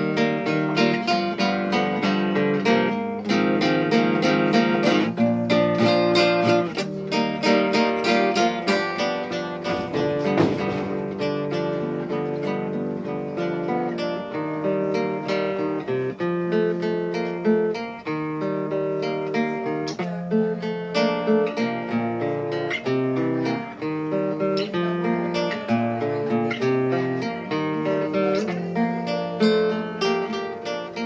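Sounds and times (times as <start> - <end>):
solo classical guitar: 0.0 - 31.0.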